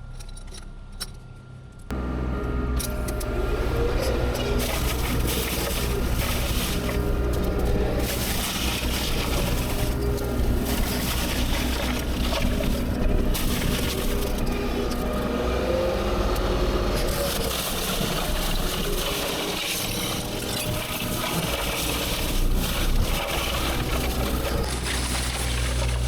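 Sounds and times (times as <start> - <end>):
heavy machine engine droning: 1.4 - 26.0.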